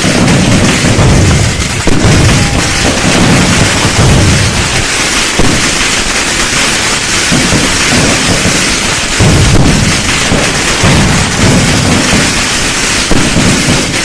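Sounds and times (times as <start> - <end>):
fireworks and firecrackers banging: 0.0 - 14.0
low rumble: 1.0 - 5.6.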